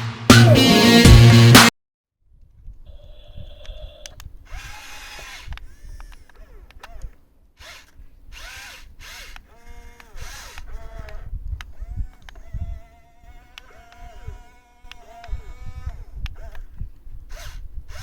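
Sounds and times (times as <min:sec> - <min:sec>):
electric motor whining: 0:04.5 - 0:18.0.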